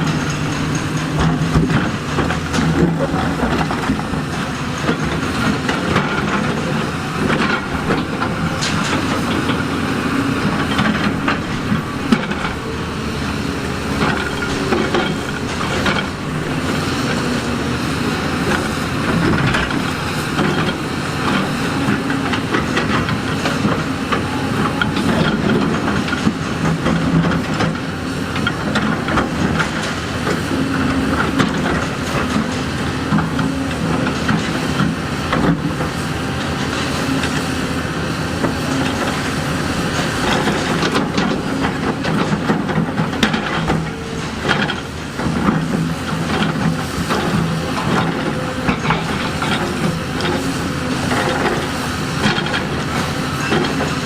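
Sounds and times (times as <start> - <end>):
rock and steel clatter: 0.0 - 24.2, 38.4 - 54.0
diesel engine running: 0.0 - 54.0.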